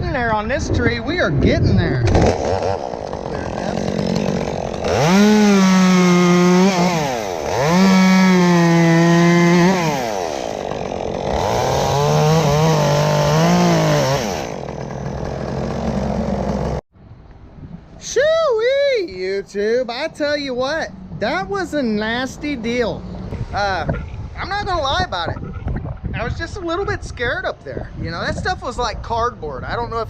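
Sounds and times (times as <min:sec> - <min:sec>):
chainsaw revving and sawing: 0:02.1 - 0:16.8.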